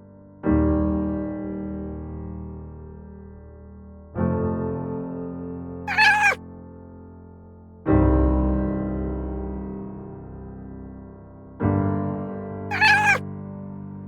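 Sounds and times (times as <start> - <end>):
cat meow: 5.9 - 6.4, 12.7 - 13.2.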